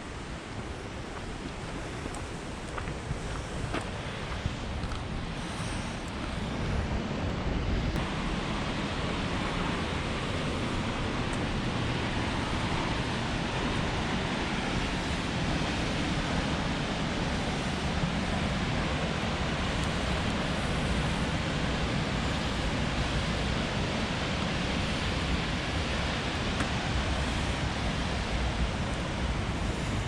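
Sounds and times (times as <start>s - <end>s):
river water rushing: 0.0s - 30.0s.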